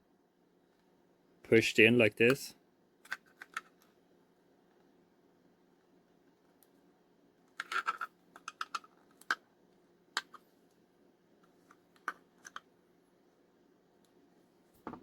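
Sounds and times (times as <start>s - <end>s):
hard plastic clicks and scrapes: 3.1s - 3.9s, 7.6s - 9.4s.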